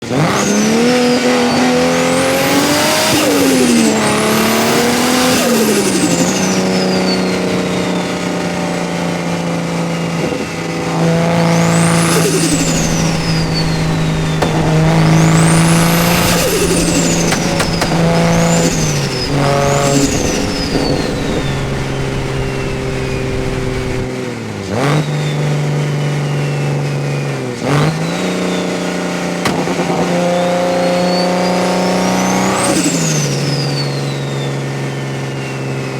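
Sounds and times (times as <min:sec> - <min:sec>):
car engine revving: 0:11.4 - 0:24.1
turbo whistle: 0:11.5 - 0:24.1
turbo flutter: 0:11.9 - 0:24.1.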